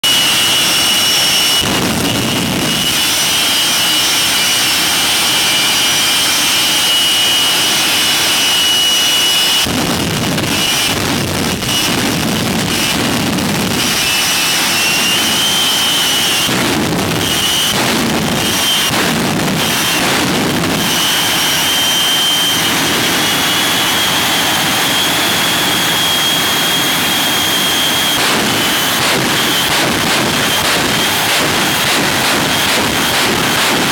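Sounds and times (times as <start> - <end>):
jet engines whining: 0.0 - 33.9
loud rushing surges: 0.0 - 33.9.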